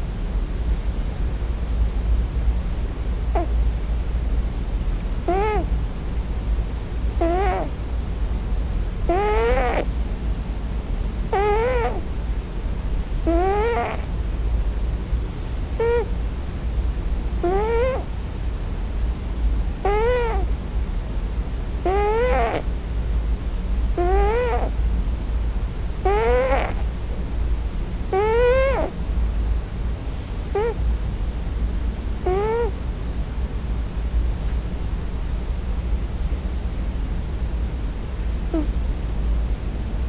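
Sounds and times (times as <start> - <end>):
cat mewing plaintively: 3.4 - 3.6, 5.2 - 5.7, 7.2 - 7.8, 9.0 - 9.9, 11.3 - 12.1, 13.2 - 14.1, 15.8 - 16.2, 17.4 - 18.1, 19.8 - 20.5, 21.8 - 22.7, 24.0 - 24.8, 26.0 - 26.8, 28.1 - 29.0, 30.6 - 30.8, 32.2 - 32.8, 38.5 - 38.8.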